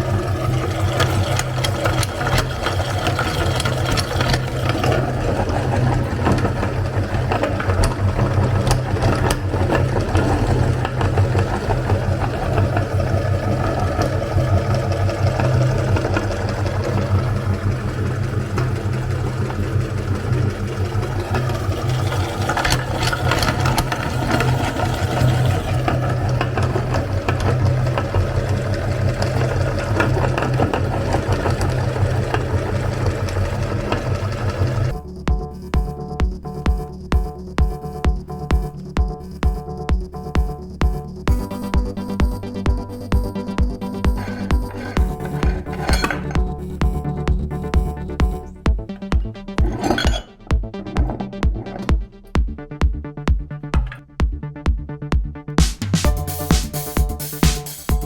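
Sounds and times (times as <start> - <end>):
electric meat grinder humming: 0.0 - 35.0, 44.0 - 46.5
soap crackling through grinder: 0.0 - 35.0, 44.0 - 47.3, 48.0 - 52.2.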